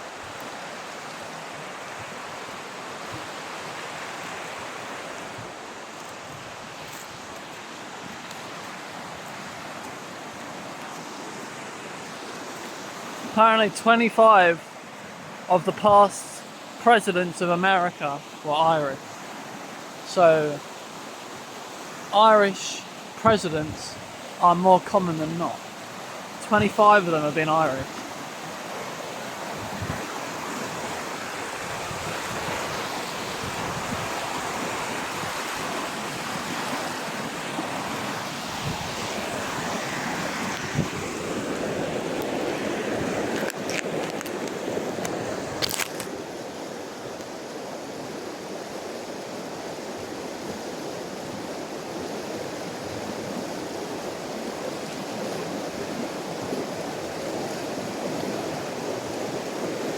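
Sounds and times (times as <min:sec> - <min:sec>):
river water flowing over rocks: 0:00.0 - 0:59.9
wind on microphone: 0:29.5 - 0:31.0, 0:31.6 - 0:36.8, 0:37.9 - 0:45.8.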